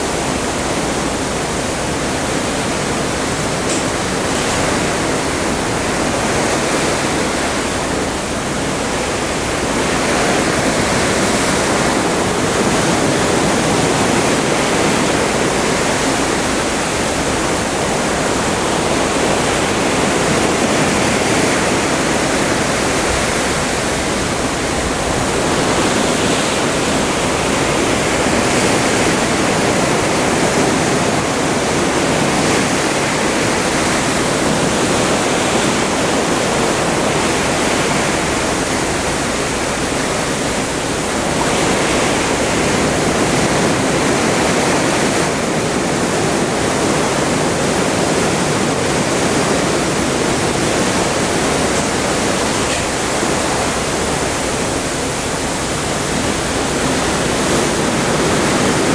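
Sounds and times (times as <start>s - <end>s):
rushing water and waves: 0.0s - 58.9s.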